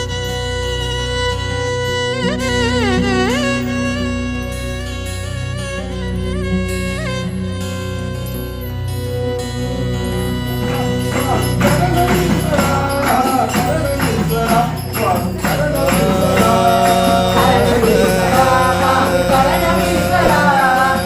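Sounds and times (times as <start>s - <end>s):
wavering devotional melody: 0.0s - 21.0s
jingling percussion: 10.2s - 21.0s
steady drone: 13.9s - 21.0s.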